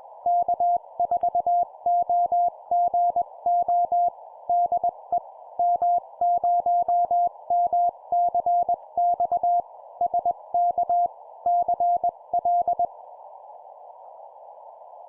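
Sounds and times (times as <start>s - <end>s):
steady radio hiss: 12.2s - 15.0s.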